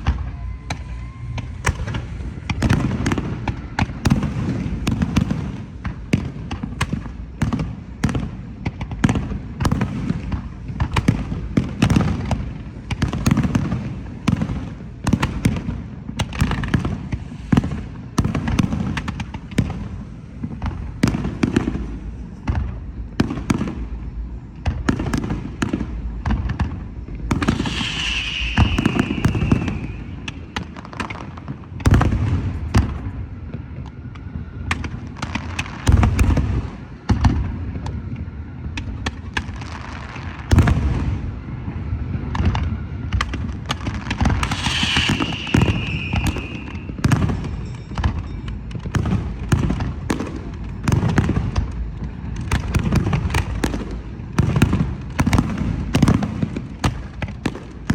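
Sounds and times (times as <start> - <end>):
low rumble and crackle: 0.0 - 57.9
firework shells bursting: 27.3 - 31.2, 44.2 - 48.1
high hiss: 27.4 - 30.7, 44.4 - 47.0.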